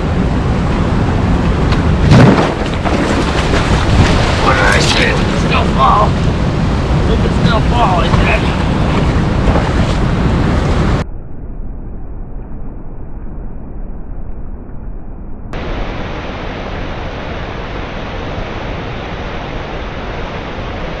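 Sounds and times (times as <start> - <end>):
wind on microphone: 0.0 - 11.0
river water rushing: 0.1 - 11.0.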